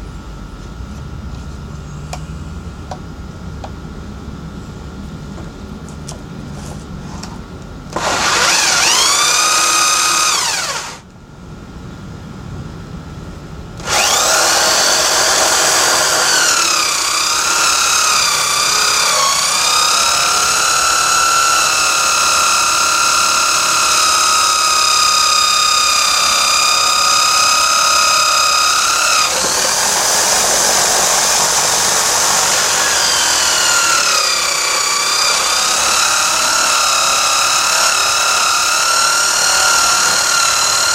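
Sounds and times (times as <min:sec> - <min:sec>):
electric drill sanding drum whining: 0:07.9 - 0:11.0, 0:13.8 - 0:40.9.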